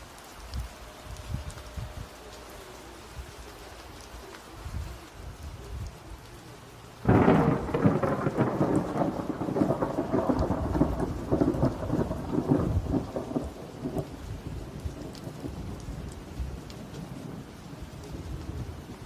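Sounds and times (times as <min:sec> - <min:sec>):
steady rain: 0:00.0 - 0:19.0
thunder rumbling: 0:07.0 - 0:19.0.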